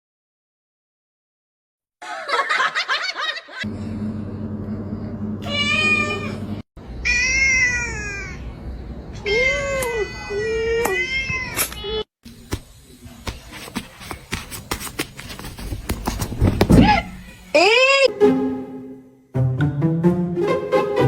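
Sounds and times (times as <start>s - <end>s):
cat meowing: 5.4s - 6.4s, 7.0s - 8.4s.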